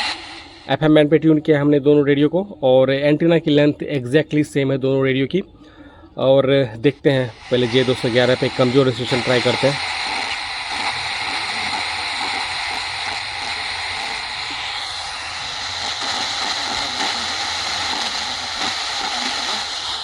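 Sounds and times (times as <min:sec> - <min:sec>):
radio static hiss: 0:00.0 - 0:01.0, 0:06.8 - 0:20.0.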